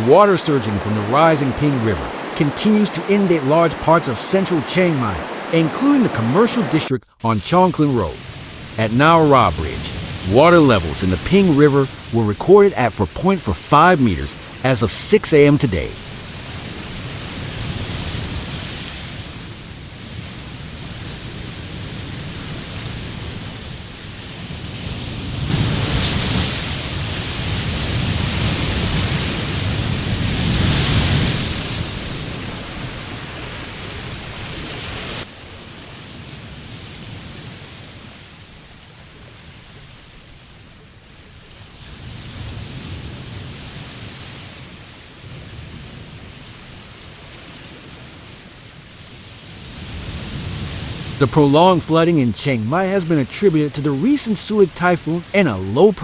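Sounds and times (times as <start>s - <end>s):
floodwater rushing: 0.0s - 19.6s, 49.2s - 56.0s.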